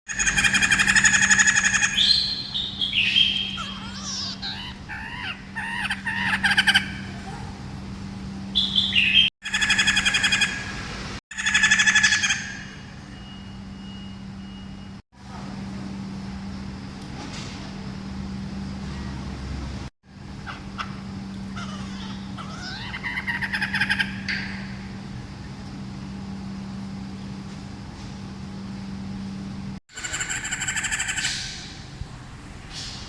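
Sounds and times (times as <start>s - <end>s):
parrot screeching calls: 0.1s - 7.0s, 11.3s - 12.9s, 21.5s - 24.6s, 30.0s - 31.6s
low electrical hum: 0.1s - 33.0s.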